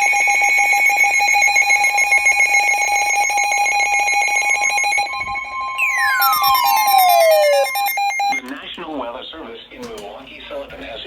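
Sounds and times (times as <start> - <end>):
electronic alarm tone: 0.0 - 8.5.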